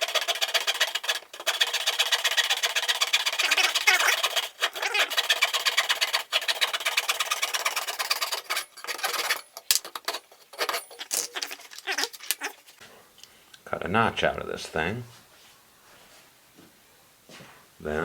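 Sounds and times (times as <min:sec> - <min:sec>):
handsaw cutting wood: 0:00.0 - 0:12.8.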